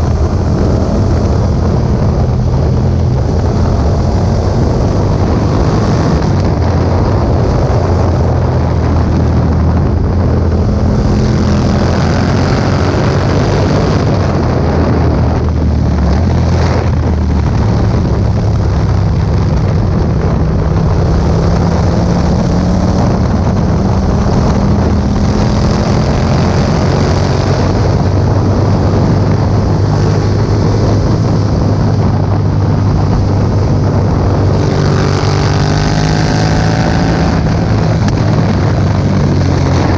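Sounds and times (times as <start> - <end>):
motorcycle engine running: 0.0 - 39.9
wind noise on microphone: 0.0 - 39.9.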